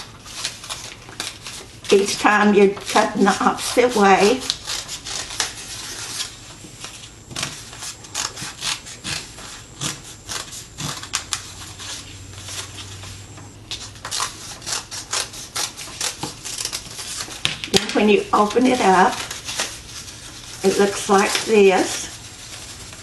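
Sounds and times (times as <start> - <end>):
paper rustling: 0.3 - 23.0
scissors snipping paper: 13.8 - 19.8, 20.6 - 22.0.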